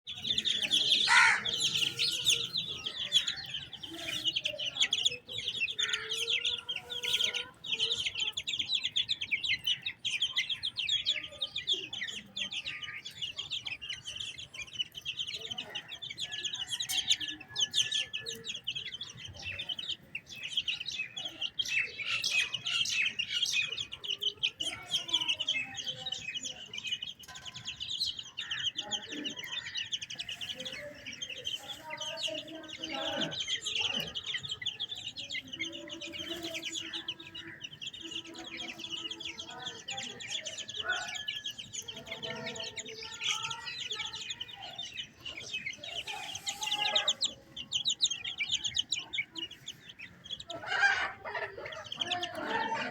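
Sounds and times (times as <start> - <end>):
chicks peeping: 0.0 - 52.9
hen clucking: 0.1 - 10.4, 21.2 - 52.9.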